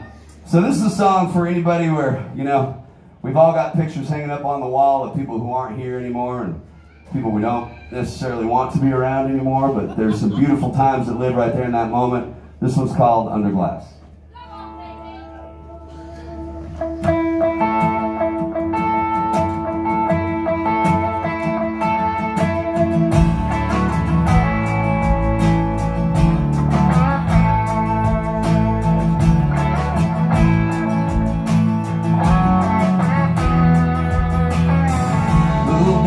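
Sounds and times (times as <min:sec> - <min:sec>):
country band playing: 0:00.0 - 0:02.7, 0:07.2 - 0:13.4, 0:14.6 - 0:36.0
guitar: 0:14.0 - 0:36.0.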